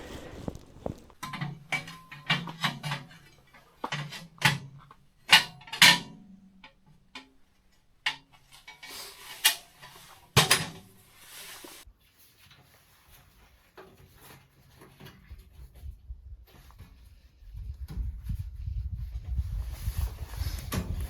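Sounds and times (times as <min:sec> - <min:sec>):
rustling: 0:00.0 - 0:02.1.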